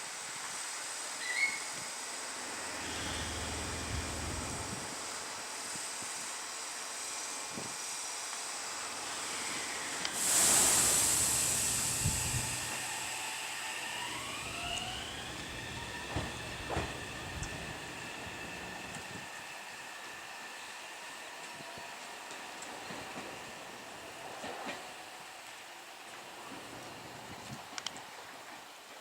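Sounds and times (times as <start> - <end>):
loud hiss of air: 0.0 - 25.2
electric motor whine: 2.3 - 5.2, 9.0 - 19.4.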